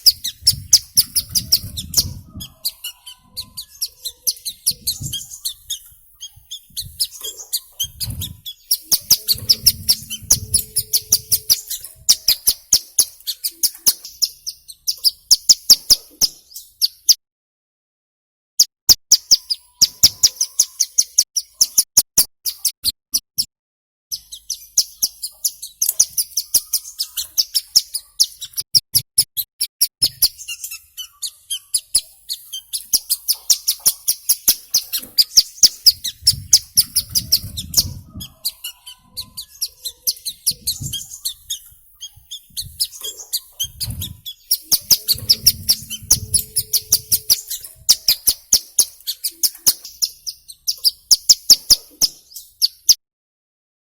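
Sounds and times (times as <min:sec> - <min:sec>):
bird chirping: 0:00.0 - 0:17.2, 0:18.9 - 0:22.8, 0:24.1 - 0:53.0
low rumbles: 0:09.0 - 0:12.1, 0:44.8 - 0:47.9.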